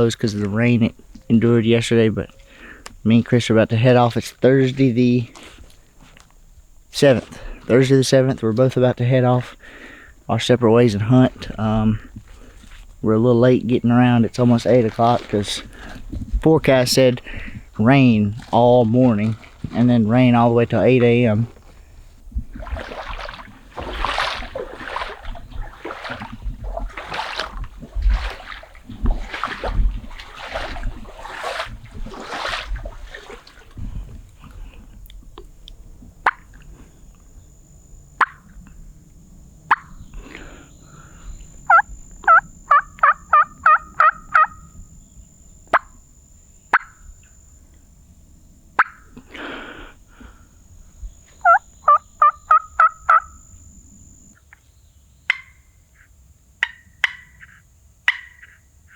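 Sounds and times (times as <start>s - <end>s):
footsteps through wet brush: 0.0s - 9.7s, 10.9s - 37.2s
turkey clucks: 39.7s - 40.0s, 41.7s - 44.6s, 48.8s - 49.0s, 51.4s - 53.3s
hen turkey yelps: 41.7s - 44.6s, 51.4s - 53.3s.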